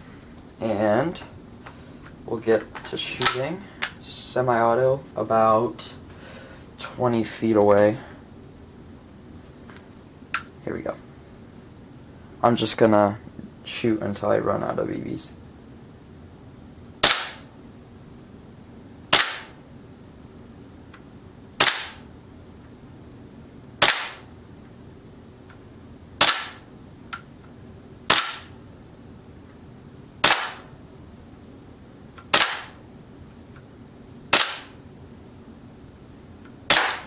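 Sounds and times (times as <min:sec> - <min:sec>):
airsoft pistol shots: 0:17.0 - 0:17.5, 0:19.1 - 0:19.6, 0:21.6 - 0:22.0, 0:23.8 - 0:24.3, 0:26.2 - 0:26.7, 0:28.1 - 0:28.6, 0:30.2 - 0:30.7, 0:32.3 - 0:32.8, 0:34.3 - 0:34.8, 0:36.7 - 0:37.0.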